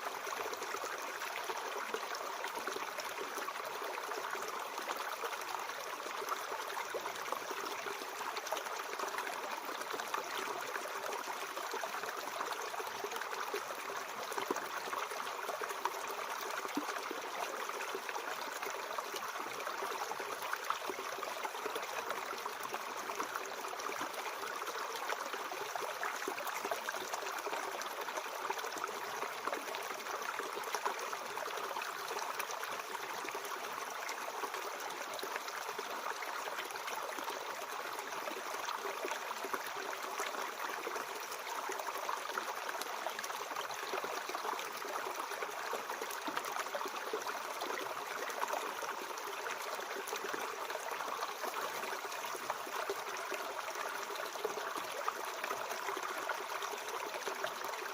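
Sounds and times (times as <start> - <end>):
mountain stream flowing: 0.0 - 57.9.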